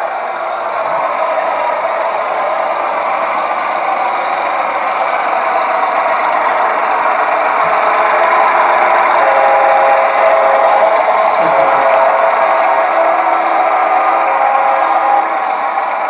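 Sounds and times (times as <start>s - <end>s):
model locomotive engine sound: 0.0s - 16.0s
steady tones: 2.7s - 16.0s.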